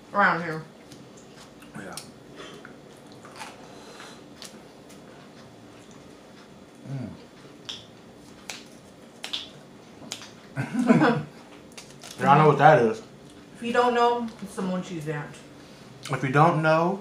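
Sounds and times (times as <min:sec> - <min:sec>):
mouth clicks and smacks chewing: 0:07.6 - 0:10.5.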